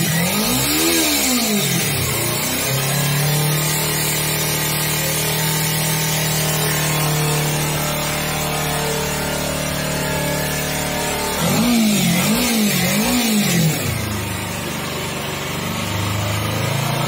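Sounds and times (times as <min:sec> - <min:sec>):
motorcycle engine idling and revving: 0:00.0 - 0:17.0.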